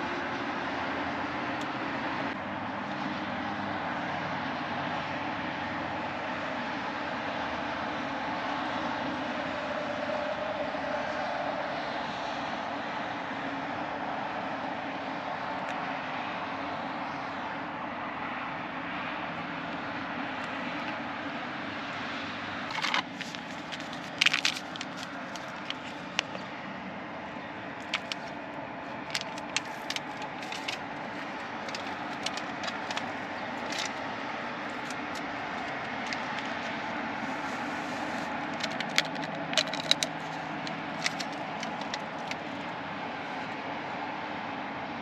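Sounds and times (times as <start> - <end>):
clicks crackles and rattles: 22.7 - 26.5, 27.8 - 42.7.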